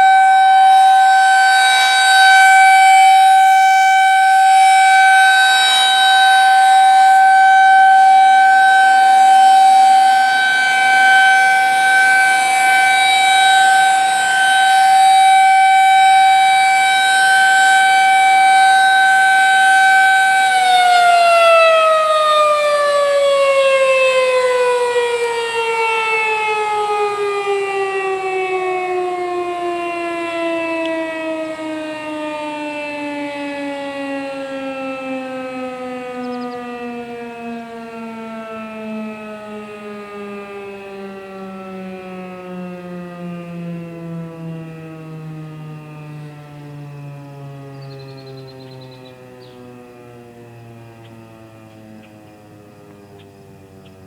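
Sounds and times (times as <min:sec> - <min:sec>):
warning siren single tone: 0:00.0 - 0:54.0.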